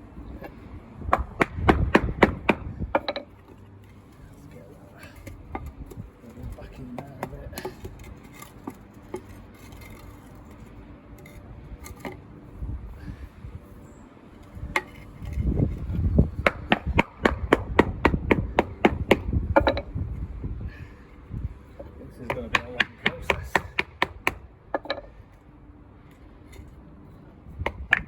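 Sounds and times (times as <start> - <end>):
sharp tamping knocks: 1.1 - 3.3, 14.7 - 19.9, 22.3 - 25.1, 27.6 - 28.0.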